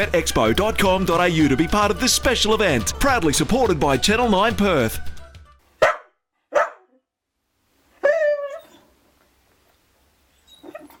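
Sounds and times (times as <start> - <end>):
dog barking: 5.8 - 7.0.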